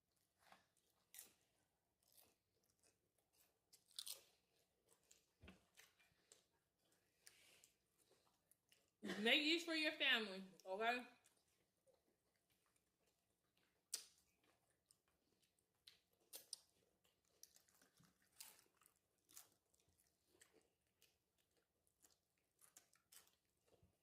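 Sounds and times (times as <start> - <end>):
chewing: 0.1 - 9.0, 11.2 - 24.0
crunching tortilla chips: 2.0 - 4.5.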